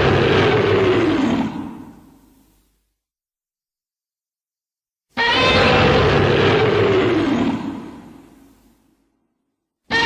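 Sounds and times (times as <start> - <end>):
monster roar: 0.0 - 1.8.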